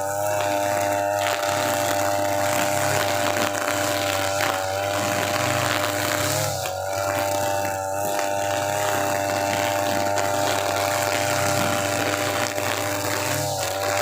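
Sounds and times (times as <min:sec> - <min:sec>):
brush cutter engine whine: 0:00.0 - 0:14.0.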